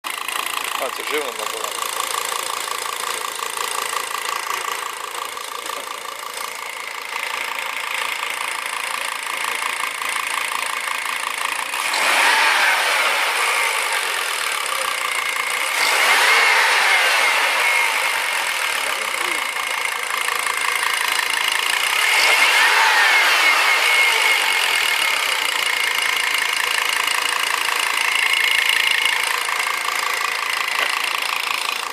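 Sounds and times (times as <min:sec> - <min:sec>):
car engine with knocking tick: 0:00.0 - 0:31.9
engine revving: 0:00.1 - 0:31.9.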